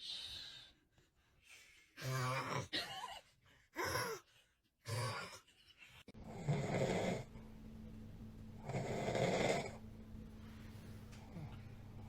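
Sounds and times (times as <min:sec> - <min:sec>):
man snoring loudly: 0:06.2 - 0:07.3, 0:08.6 - 0:09.8.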